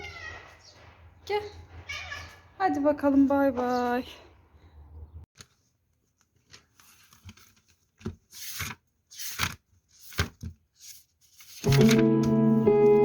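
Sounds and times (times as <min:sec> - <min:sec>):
rustling and tearing: 0:06.4 - 0:12.0.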